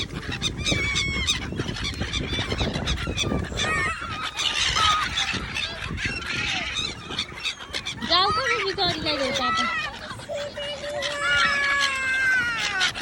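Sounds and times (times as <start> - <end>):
fowl calling: 0.0 - 13.0.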